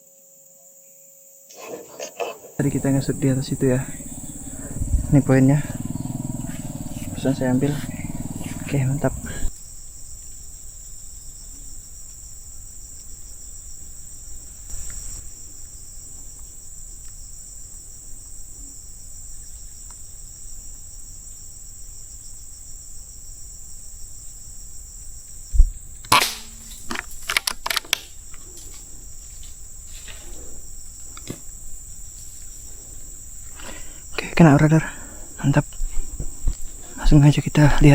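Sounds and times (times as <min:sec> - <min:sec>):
insects buzzing: 0:00.0 - 0:37.9
air rifle shot: 0:26.1 - 0:27.4.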